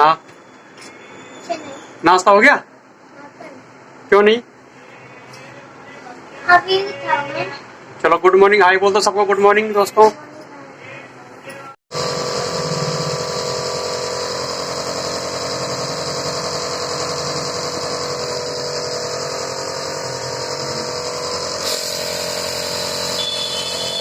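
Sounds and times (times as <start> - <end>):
engine running with whine: 11.9 - 24.0.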